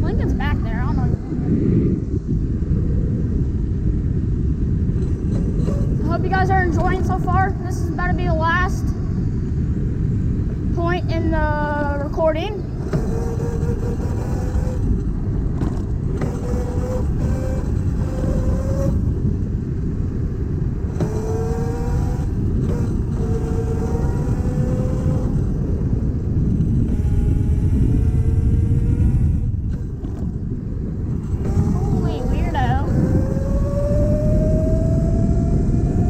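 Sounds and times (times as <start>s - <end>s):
wind rushing: 0.0s - 36.0s
scooter motor running: 10.6s - 36.0s.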